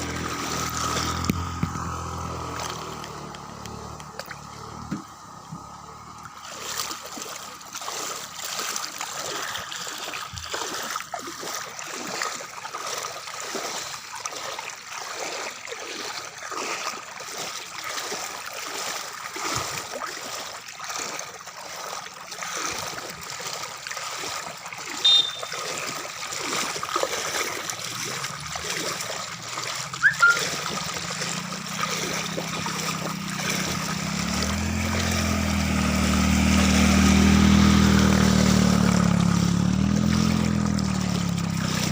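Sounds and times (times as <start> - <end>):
vehicle engine: 0.0 - 9.7, 26.4 - 41.9
floodwater flowing and splashing: 0.0 - 41.9.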